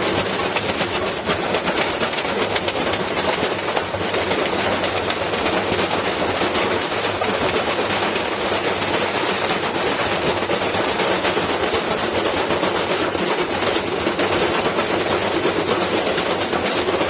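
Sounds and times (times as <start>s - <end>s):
washing machine running: 0.0s - 17.0s.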